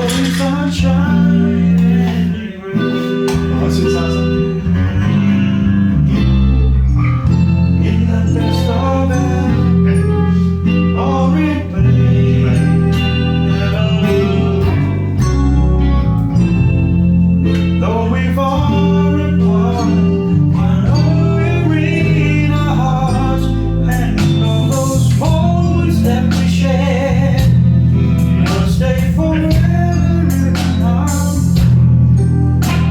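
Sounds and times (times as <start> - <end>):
band playing: 0.0 - 32.9
held bass notes: 0.0 - 32.9.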